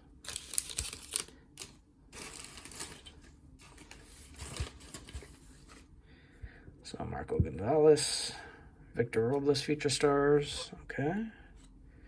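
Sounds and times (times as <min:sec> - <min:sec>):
cards and packaging rustling: 0:00.0 - 0:05.9.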